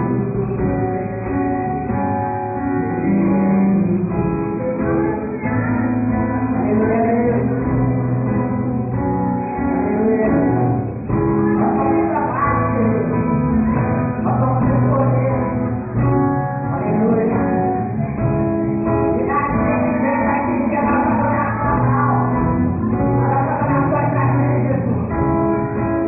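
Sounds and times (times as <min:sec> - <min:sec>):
live band playing: 0:00.0 - 0:26.0
person singing: 0:00.0 - 0:26.0.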